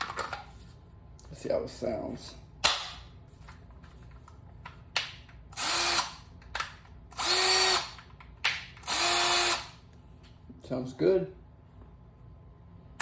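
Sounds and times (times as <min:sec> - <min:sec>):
drill motor whine: 0:05.6 - 0:06.2, 0:07.2 - 0:07.9, 0:08.8 - 0:09.8
sharp drill click: 0:05.6 - 0:06.2, 0:07.2 - 0:08.0, 0:08.8 - 0:09.8.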